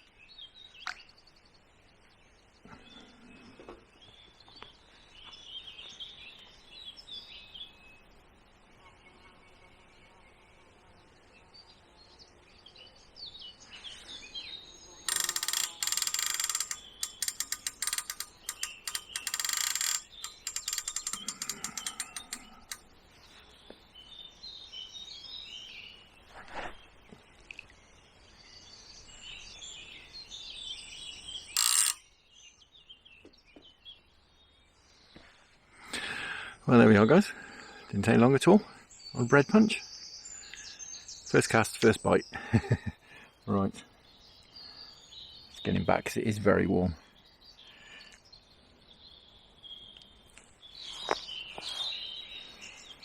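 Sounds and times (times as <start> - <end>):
small birds singing: 0.0 - 53.0
fishing reel ratchet clicking: 15.1 - 22.8, 31.6 - 32.0.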